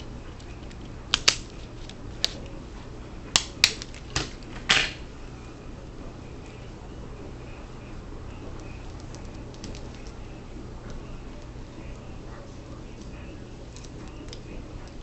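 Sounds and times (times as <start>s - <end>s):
adhesive tape tearing: 0.6s - 2.5s.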